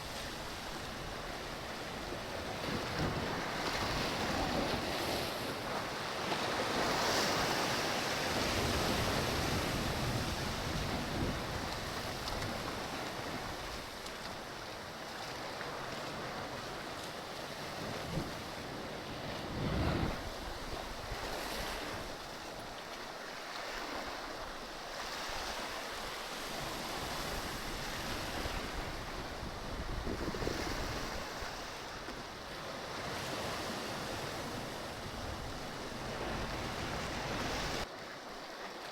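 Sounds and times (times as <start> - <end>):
surf against rocky shore: 0.0 - 38.9
wind buffeting microphone: 8.3 - 13.9, 17.8 - 22.2, 26.3 - 32.1.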